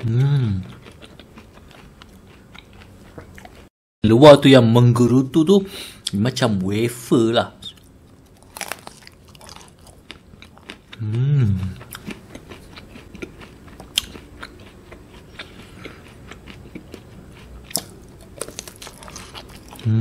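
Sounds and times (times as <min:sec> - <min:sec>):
short vocal sound: 0:00.0 - 0:00.7, 0:11.0 - 0:11.8
chewing and crunching ice cream bar: 0:00.0 - 0:03.7, 0:07.6 - 0:19.9.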